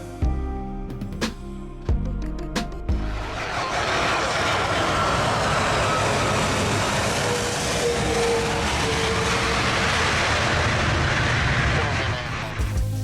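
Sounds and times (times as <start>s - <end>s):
music: 0.0s - 3.6s, 12.5s - 13.0s
engine noise: 3.2s - 12.6s
loud rushing hiss: 3.5s - 13.0s.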